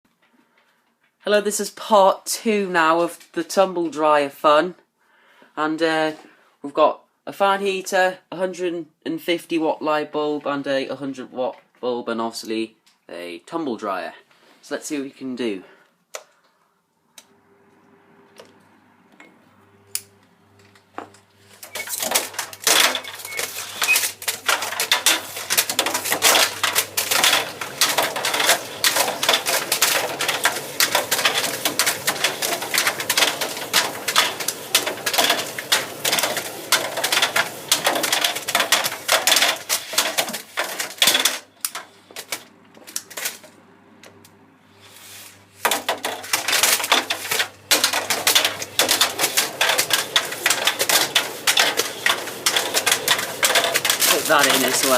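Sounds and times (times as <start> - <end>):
tumble dryer motor hum: 17.2 - 54.9
hard objects clattering in drum: 21.0 - 41.5, 45.6 - 54.9.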